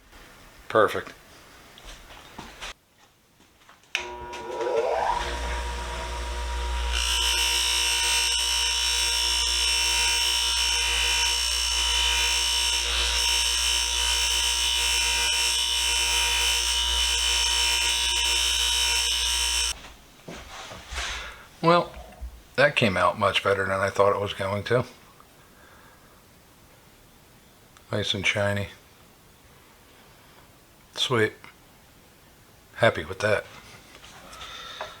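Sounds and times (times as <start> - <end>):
electric buffer spinning: 4.0 - 19.8.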